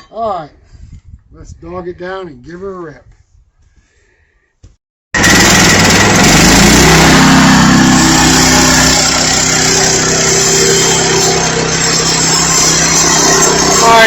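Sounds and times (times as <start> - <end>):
bandsaw sawmill engine running: 5.2 - 14.0.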